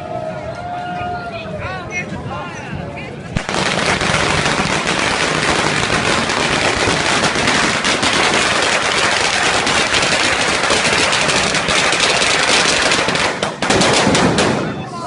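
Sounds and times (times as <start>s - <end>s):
firecrackers crackling: 3.3s - 15.0s.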